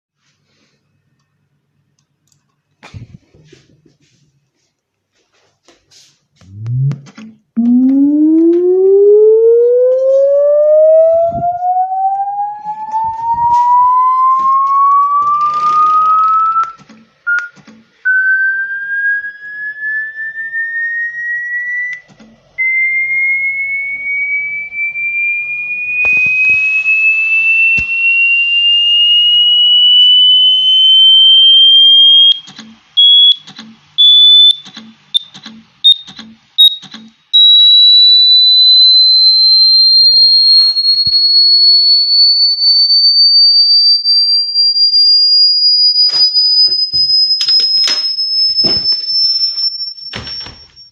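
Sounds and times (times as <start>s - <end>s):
electronic tone sweeping upward: 6.4s - 16.8s, 18.1s - 32.4s, 37.4s - 43.9s.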